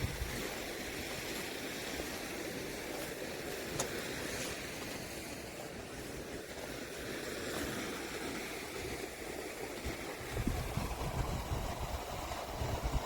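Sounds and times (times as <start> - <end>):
steady outdoor rushing noise: 7.8 - 13.0.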